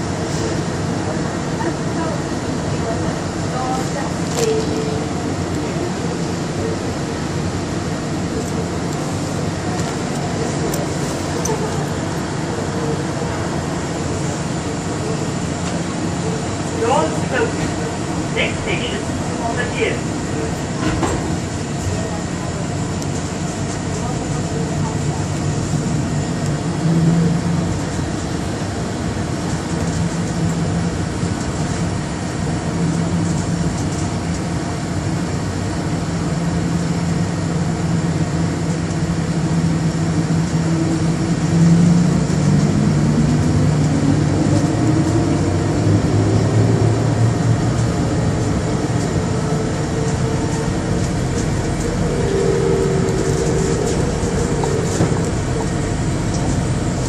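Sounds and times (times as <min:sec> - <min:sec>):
train rumble with motor hum: 0:00.0 - 0:57.0
rising motor whine: 0:40.7 - 0:57.0
high steady tones: 0:49.6 - 0:57.0.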